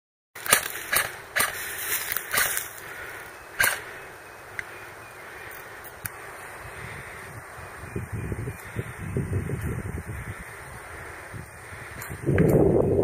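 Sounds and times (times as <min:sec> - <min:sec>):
airsoft gun shots: 0:00.4 - 0:01.6, 0:03.6 - 0:03.9
steady outdoor hiss: 0:00.4 - 0:13.0.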